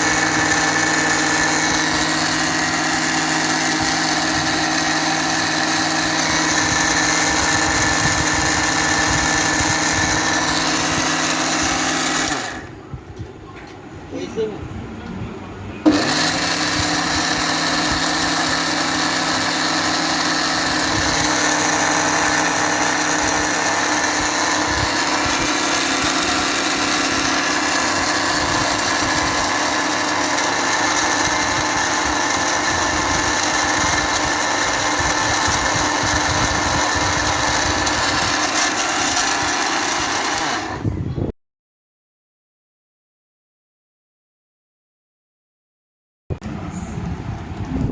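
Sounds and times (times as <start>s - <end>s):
mixer grinder motor running: 0.0s - 12.9s, 15.8s - 41.2s.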